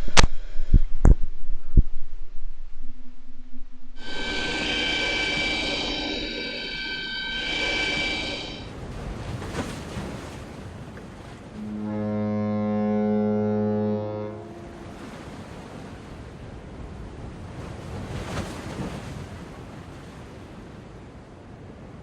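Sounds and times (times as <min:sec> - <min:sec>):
low horn-like tone: 0:04.0 - 0:08.7, 0:11.5 - 0:15.3.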